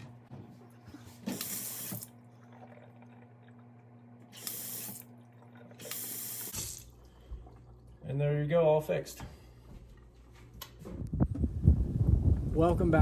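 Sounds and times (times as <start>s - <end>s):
water rushing into sink: 1.2s - 8.0s.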